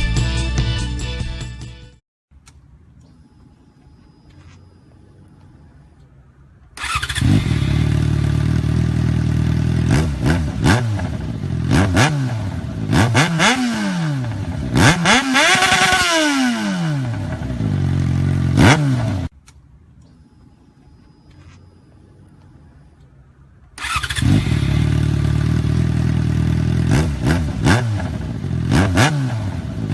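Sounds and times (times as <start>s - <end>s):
motorcycle engine revving: 6.8s - 19.3s, 23.8s - 29.9s.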